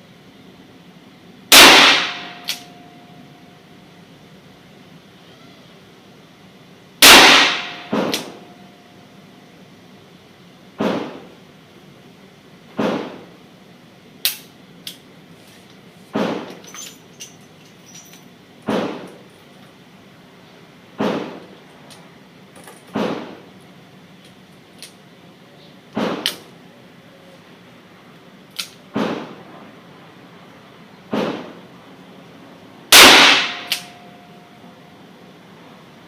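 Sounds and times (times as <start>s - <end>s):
revolver gunshots: 1.5s - 2.5s, 7.0s - 8.4s, 32.9s - 34.0s.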